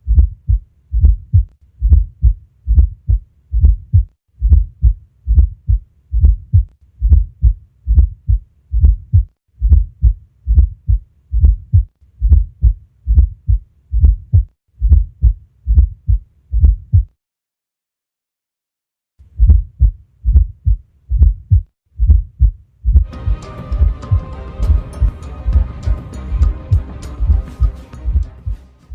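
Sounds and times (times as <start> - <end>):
heartbeat through stethoscope: 0.0 - 17.2, 19.3 - 28.6.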